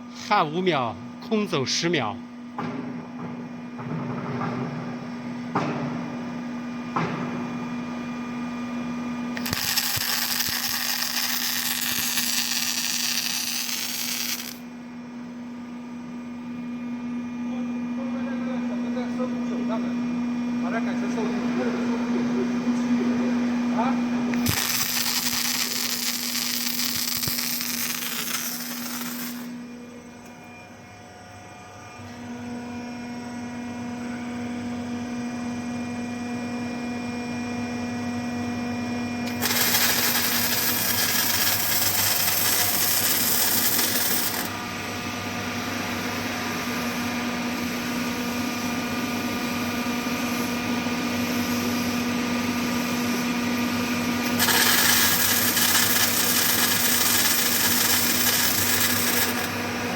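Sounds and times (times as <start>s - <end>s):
machine electrical hum: 0.0s - 59.9s
welding arc hissing: 9.4s - 14.6s, 24.4s - 29.5s, 39.3s - 44.5s, 54.2s - 59.6s.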